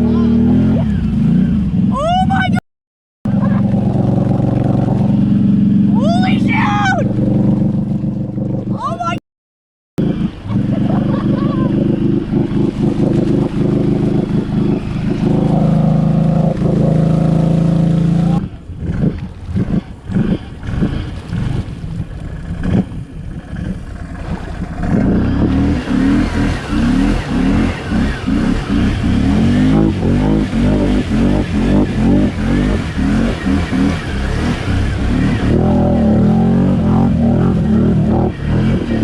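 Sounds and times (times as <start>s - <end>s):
atv engine revving: 0.0s - 2.2s, 3.3s - 9.2s, 10.0s - 39.0s.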